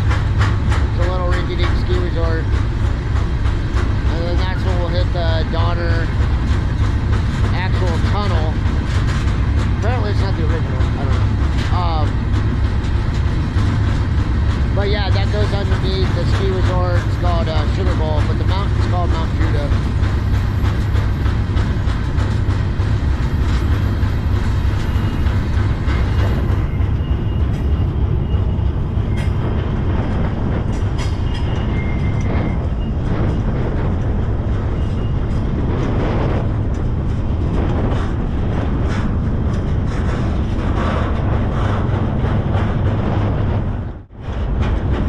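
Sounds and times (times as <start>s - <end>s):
rail clicks: 0.0s - 45.0s
train wheels rumbling: 0.0s - 45.0s
faint high squeals: 31.2s - 33.0s.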